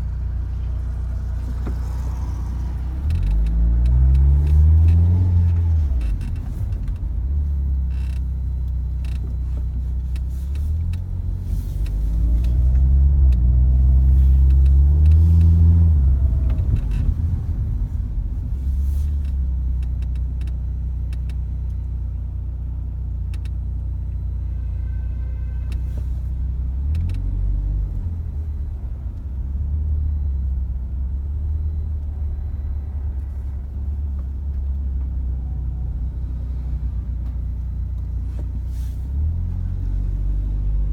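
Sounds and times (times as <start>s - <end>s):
car engine hum: 0.0s - 40.9s.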